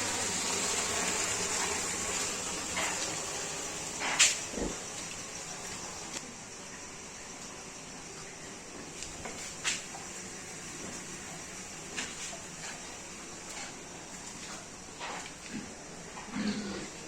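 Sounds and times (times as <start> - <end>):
steady background hiss: 0.0 - 17.0.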